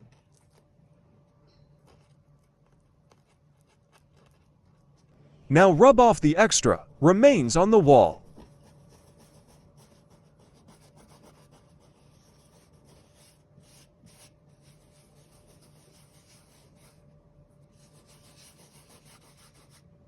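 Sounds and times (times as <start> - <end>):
faint steady hum: 0.0 - 20.0
hands scrubbing a wall: 8.4 - 19.9.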